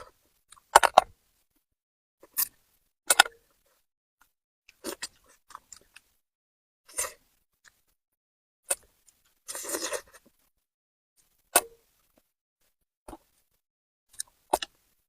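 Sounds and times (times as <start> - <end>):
close-miked eating: 4.7 - 6.2.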